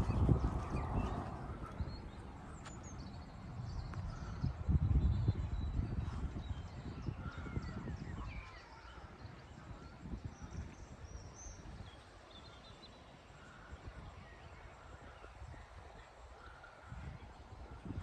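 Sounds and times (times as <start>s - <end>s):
low rumble: 0.0s - 6.2s
faint birdsong: 0.0s - 18.0s.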